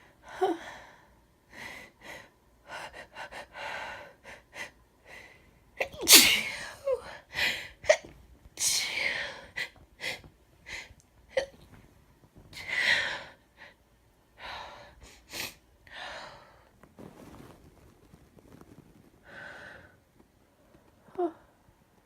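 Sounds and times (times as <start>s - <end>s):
woman sneezing: 5.8s - 6.8s
woman coughing: 5.8s - 7.0s.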